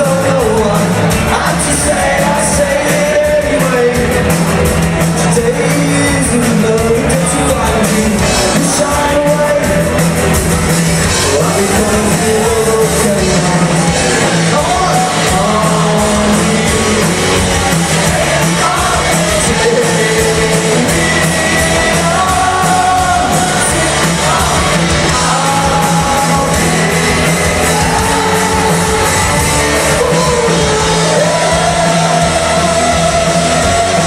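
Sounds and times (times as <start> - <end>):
person singing: 0.0 - 10.0, 11.2 - 34.0
rock band playing: 0.0 - 34.0
steady drum beat: 0.0 - 34.0.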